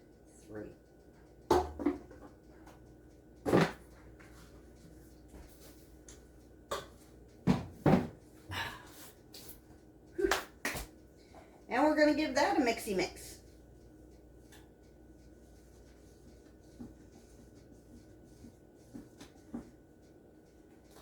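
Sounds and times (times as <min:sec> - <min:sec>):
utensils knocking against mixing bowl: 0:01.5 - 0:02.3.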